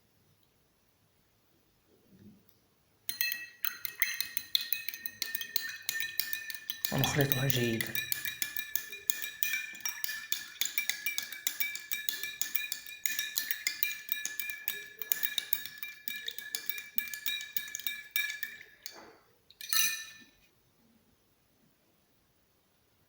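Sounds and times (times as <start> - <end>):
spoon clinking against glass: 3.1 - 19.0, 19.6 - 20.3.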